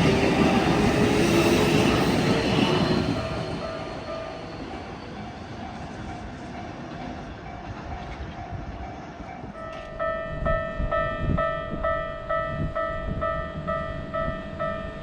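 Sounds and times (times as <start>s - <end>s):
train rumbling past: 0.0s - 15.0s
faint crossing alarm bell: 8.5s - 15.0s
loud level crossing bell: 9.5s - 15.0s.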